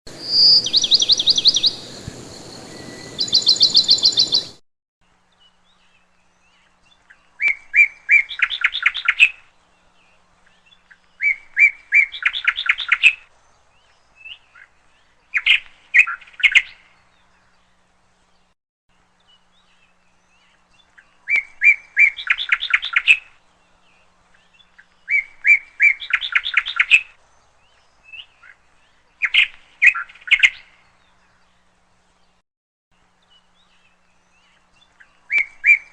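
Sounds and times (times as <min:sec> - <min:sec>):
songbird singing trilled notes: 0:00.1 - 0:04.6, 0:19.2 - 0:31.6, 0:33.2 - 0:35.9.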